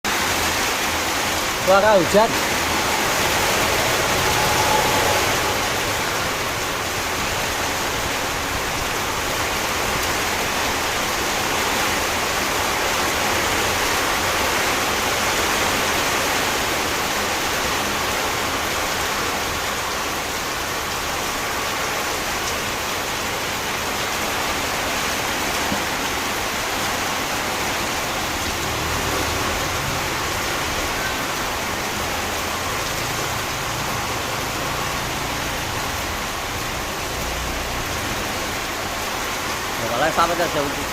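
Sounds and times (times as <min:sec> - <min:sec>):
heavy rain pouring: 0:00.0 - 0:40.9.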